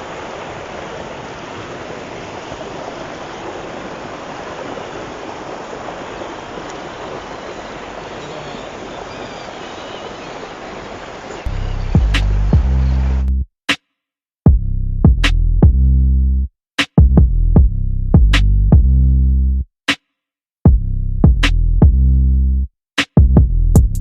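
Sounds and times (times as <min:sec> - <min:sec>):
river water rushing: 0:00.0 - 0:13.2
music with drum-machine beat: 0:12.0 - 0:12.8, 0:14.5 - 0:15.8, 0:16.8 - 0:18.9, 0:20.7 - 0:22.0, 0:23.0 - 0:24.0.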